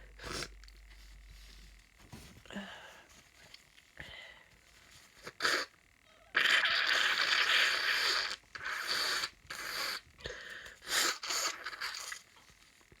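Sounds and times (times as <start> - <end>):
person blowing nose: 5.2 - 5.7, 6.4 - 10.0, 10.8 - 12.0.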